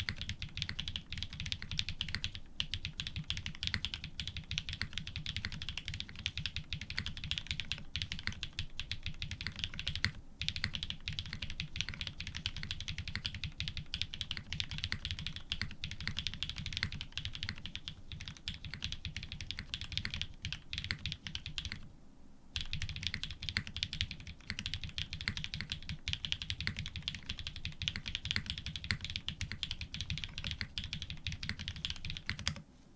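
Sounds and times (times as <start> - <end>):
fast typing on mechanical keyboard: 0.0 - 21.9, 22.6 - 32.6.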